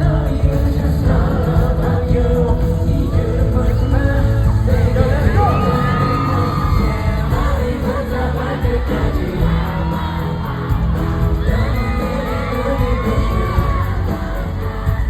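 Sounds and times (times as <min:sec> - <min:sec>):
person singing: 0:00.0 - 0:15.0
pop song with heavy bass: 0:00.0 - 0:15.0
audience cheering and whooping: 0:03.0 - 0:15.0.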